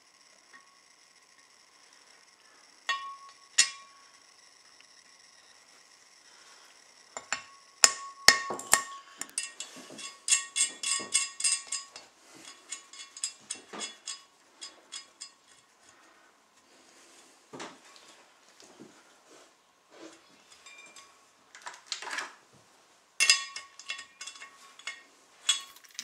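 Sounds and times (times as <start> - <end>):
light ringing hammer taps: 2.9 - 3.9.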